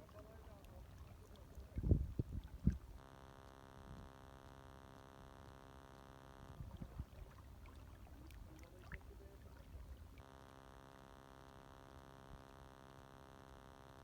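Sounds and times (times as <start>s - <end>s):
water lapping softly: 0.0s - 13.6s
electrical hum: 0.4s - 14.0s
small clicks and low knocks: 10.2s - 14.0s.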